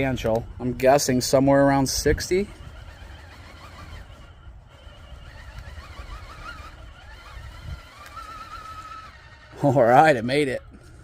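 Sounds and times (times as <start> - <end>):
toy truck motor whining: 0.0 - 11.0.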